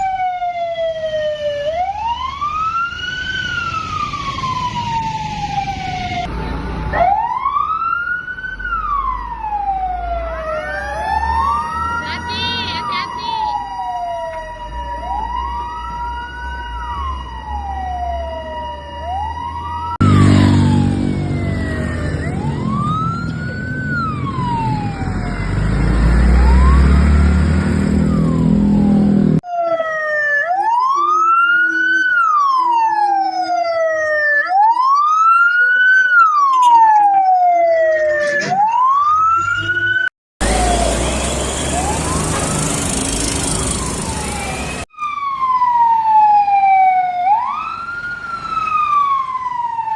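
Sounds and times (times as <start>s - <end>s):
truck engine rumble: 0.0s - 7.1s, 19.1s - 29.4s, 30.8s - 49.9s
fire engine sirens wailing: 0.0s - 49.9s.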